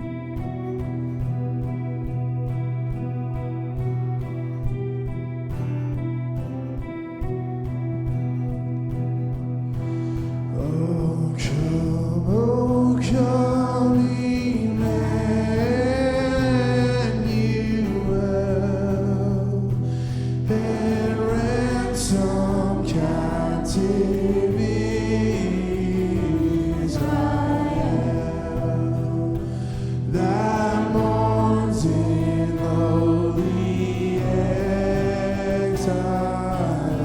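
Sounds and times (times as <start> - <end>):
worship band and singers: 9.8 - 37.0.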